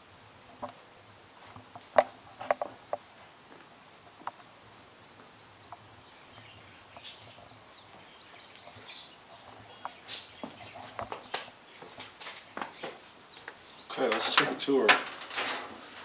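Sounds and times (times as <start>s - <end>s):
birds chirping: 4.3s - 14.9s.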